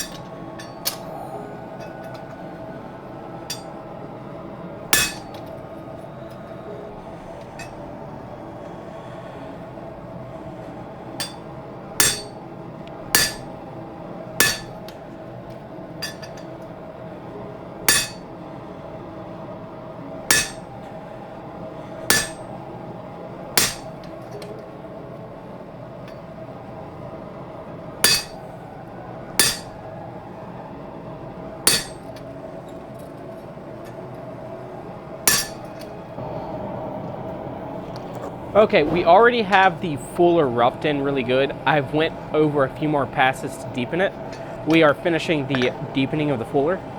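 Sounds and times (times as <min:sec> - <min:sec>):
hammer striking metal on anvil: 0:00.0 - 0:01.1, 0:03.4 - 0:03.8, 0:04.9 - 0:05.5, 0:11.2 - 0:12.4, 0:13.1 - 0:13.6, 0:14.4 - 0:15.0, 0:16.0 - 0:16.5, 0:17.8 - 0:18.3, 0:20.3 - 0:20.7, 0:22.1 - 0:22.5, 0:23.6 - 0:24.5, 0:28.0 - 0:28.4, 0:29.3 - 0:29.8, 0:31.6 - 0:32.2, 0:35.2 - 0:35.9, 0:44.2 - 0:46.5
steady hum: 0:00.0 - 0:46.9.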